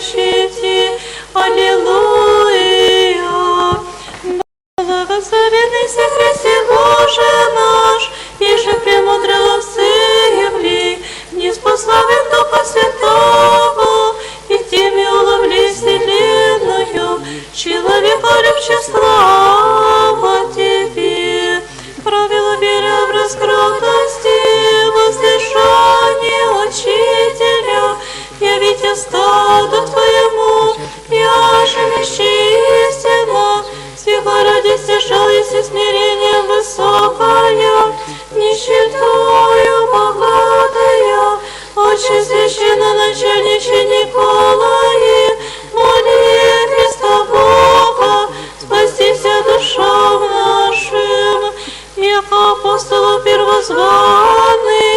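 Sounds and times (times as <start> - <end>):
choir chanting a cappella over radio: 0.0 - 54.9.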